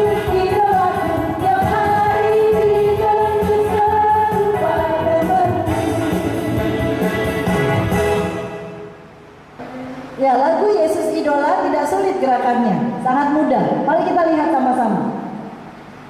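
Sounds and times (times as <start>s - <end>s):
worship song with singing: 0.0s - 7.0s.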